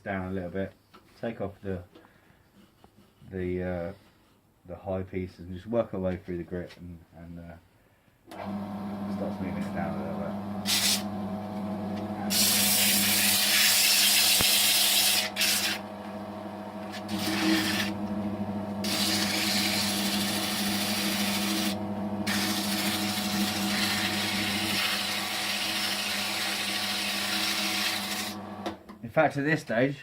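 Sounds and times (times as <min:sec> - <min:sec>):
lathe motor humming: 0:08.4 - 0:28.8
sandpaper rasping on spinning wood: 0:10.7 - 0:11.1, 0:12.3 - 0:15.8, 0:16.9 - 0:18.0, 0:18.8 - 0:28.4.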